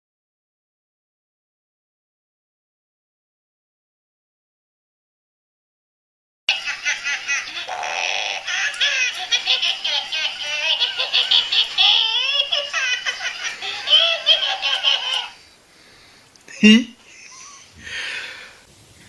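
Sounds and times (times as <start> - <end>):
baby laughing and squealing: 6.5 - 15.4, 17.1 - 17.8.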